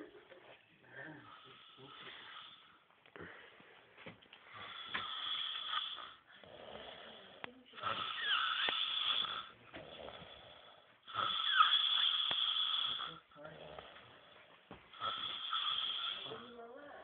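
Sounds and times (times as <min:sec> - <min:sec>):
soft breaths out: 0:00.8 - 0:05.2
man snoring with whistling edge: 0:07.8 - 0:10.2, 0:11.1 - 0:13.2, 0:15.0 - 0:16.4.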